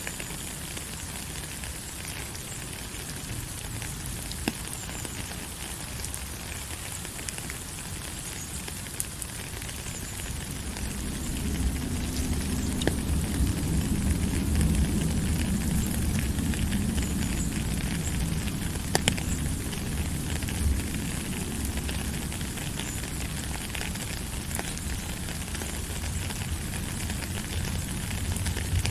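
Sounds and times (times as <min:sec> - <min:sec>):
small crackles and pops: 0:00.0 - 0:28.9
low rumbling noise: 0:09.3 - 0:28.9.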